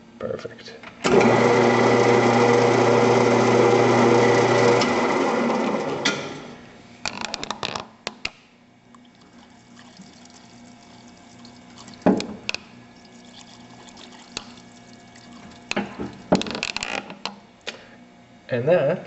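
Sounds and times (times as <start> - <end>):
lathe humming: 1.1 - 6.7.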